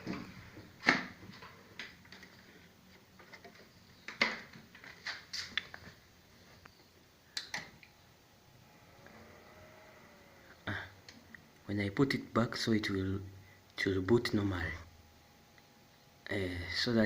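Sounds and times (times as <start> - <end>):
faint low hum: 0.0 - 17.0
clicks and knocks handling computer: 3.2 - 5.2.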